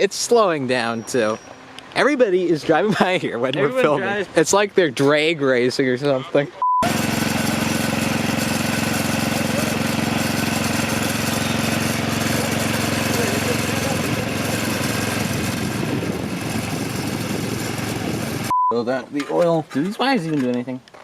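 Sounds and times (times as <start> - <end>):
engine idling: 6.8 - 18.5.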